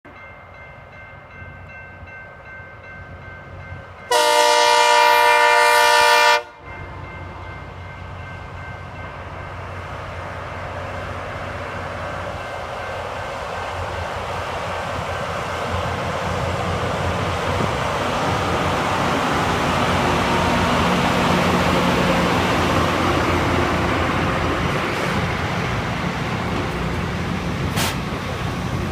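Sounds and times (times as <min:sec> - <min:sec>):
rail grinder horn blast: 0:04.1 - 0:06.7
rail grinder hiss and rumble: 0:14.0 - 0:28.9.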